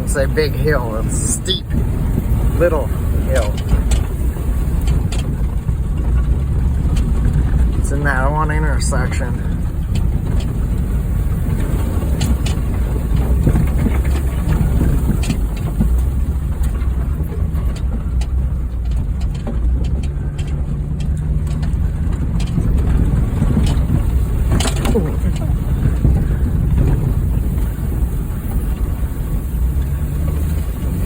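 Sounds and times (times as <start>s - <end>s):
car engine droning: 0.0s - 31.0s.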